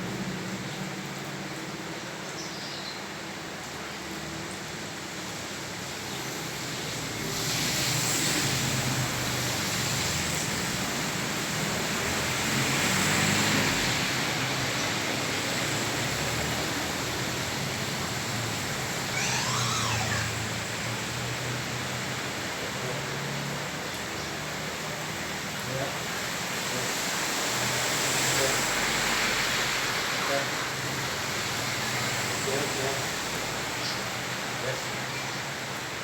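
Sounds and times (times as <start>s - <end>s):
heavy rain on a flooded street: 0.0s - 36.0s
vehicles passing through water: 0.0s - 36.0s.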